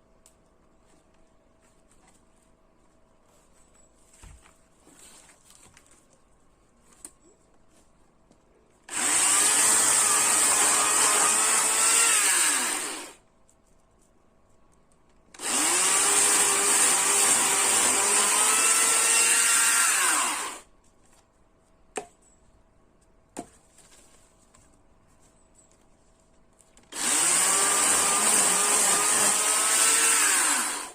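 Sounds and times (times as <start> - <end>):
chainsaw running: 8.9 - 13.2, 15.4 - 20.6, 26.9 - 30.9.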